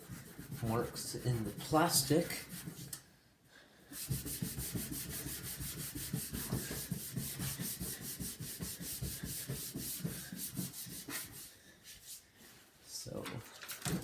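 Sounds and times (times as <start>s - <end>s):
sponge scrubbing plastic: 0.0s - 3.0s, 4.0s - 12.2s.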